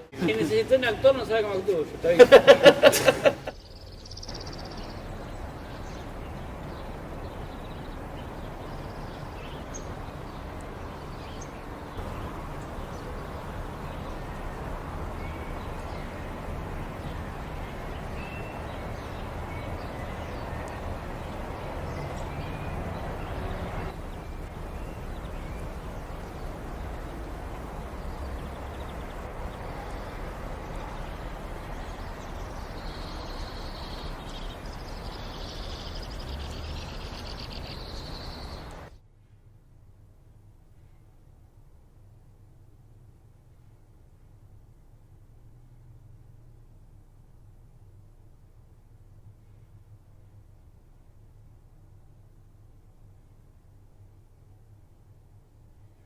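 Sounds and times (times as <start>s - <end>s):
distant traffic hum: 0.0s - 39.0s
faint bird chirps: 3.5s - 39.6s.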